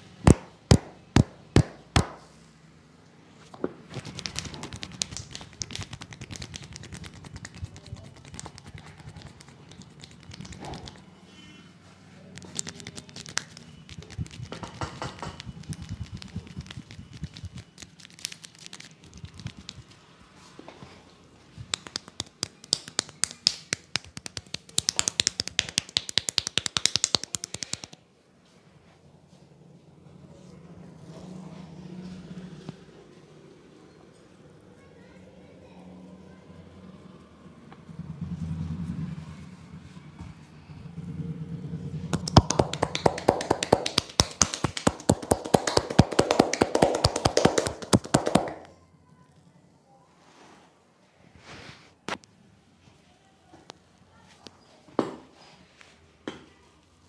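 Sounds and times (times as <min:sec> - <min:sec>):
hands slapping and tapping: 0:00.3 - 0:02.2, 0:03.9 - 0:11.0, 0:12.4 - 0:20.0, 0:21.6 - 0:28.0, 0:42.1 - 0:48.7.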